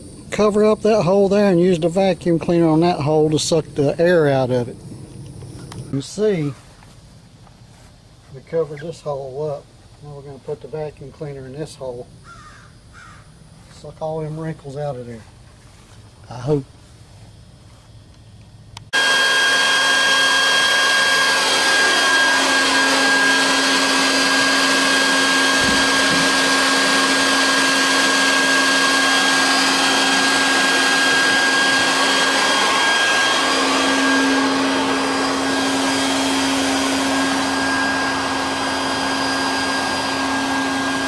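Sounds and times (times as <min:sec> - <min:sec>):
vacuum cleaner running: 0:00.0 - 0:07.0, 0:07.7 - 0:10.5, 0:18.9 - 0:41.0.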